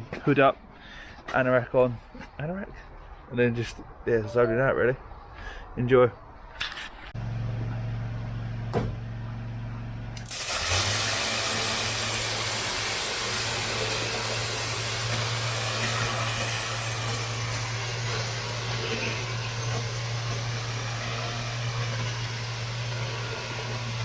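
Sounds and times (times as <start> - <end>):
pressure washer motor hum: 7.2 - 24.0
high-pressure spray hissing on paving: 10.2 - 24.0.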